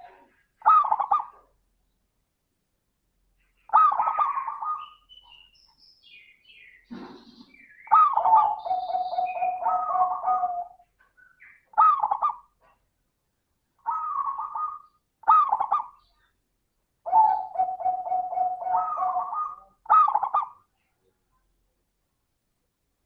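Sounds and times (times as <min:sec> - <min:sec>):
dove cooing: 0:00.0 - 0:01.5, 0:03.7 - 0:05.0, 0:06.9 - 0:10.9, 0:11.7 - 0:12.6, 0:13.8 - 0:16.0, 0:17.0 - 0:20.6.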